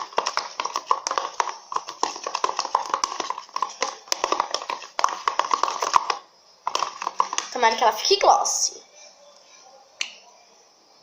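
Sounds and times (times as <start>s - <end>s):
utensil tapping plastic pot: 0.0s - 7.9s
utensil stirring slime: 0.0s - 8.6s.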